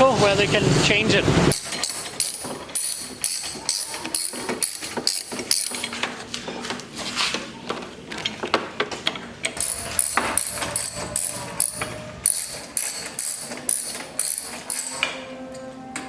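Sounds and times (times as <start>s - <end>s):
background music: 9.6s - 16.0s.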